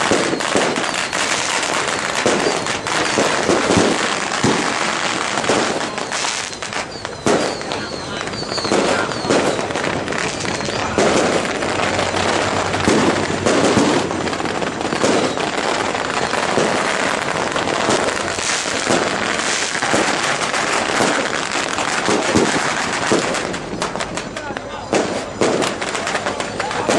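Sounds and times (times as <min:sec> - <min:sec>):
firecrackers popping: 0:00.0 - 0:26.9.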